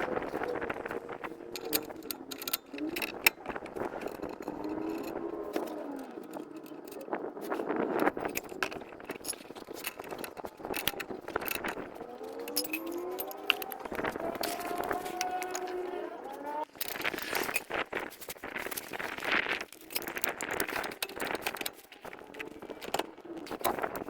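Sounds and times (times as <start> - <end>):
metal tools clinking and rattling: 0.0 - 24.0.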